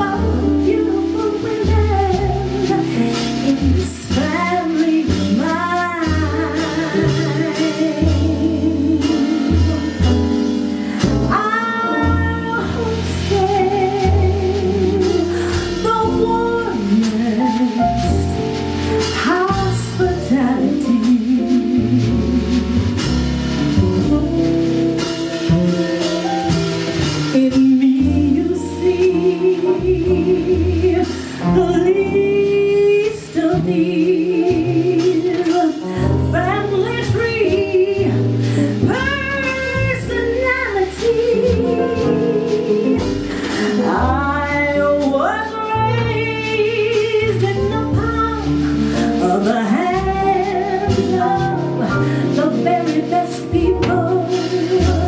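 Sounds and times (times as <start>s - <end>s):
jazz band with guitar and bass: 0.0s - 55.0s
woman singing with vibrato: 11.2s - 18.4s, 27.4s - 55.0s.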